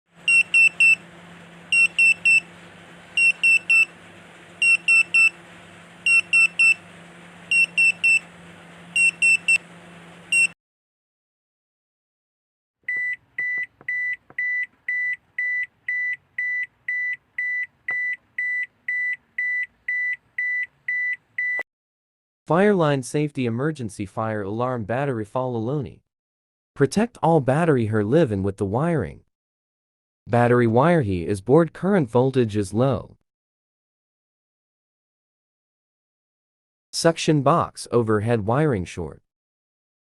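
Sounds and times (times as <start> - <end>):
electronic alarm beeping: 0.2 - 1.1, 1.7 - 2.6, 3.2 - 4.0, 4.6 - 5.4, 6.0 - 6.9, 7.5 - 8.3, 8.9 - 9.6, 10.3 - 10.6, 12.9 - 21.6
low steady hum: 0.2 - 10.5.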